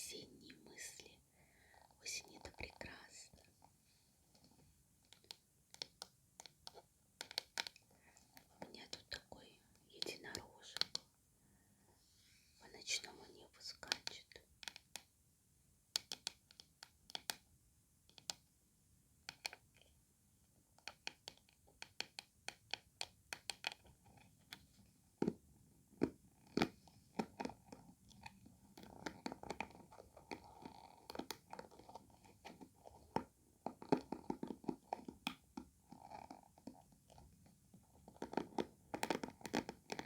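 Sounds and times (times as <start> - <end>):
crackly scratching: 23.4 - 40.0.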